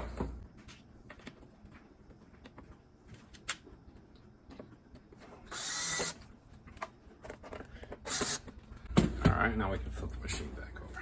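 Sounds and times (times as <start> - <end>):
cordless drill-driver running: 5.5 - 6.2, 8.1 - 8.4.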